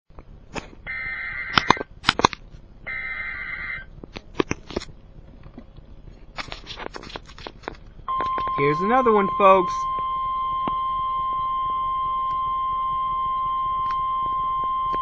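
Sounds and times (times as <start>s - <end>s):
sharp clicks and knocks: 1.5s - 2.5s
buzzy warbling data tones: 8.1s - 15.0s.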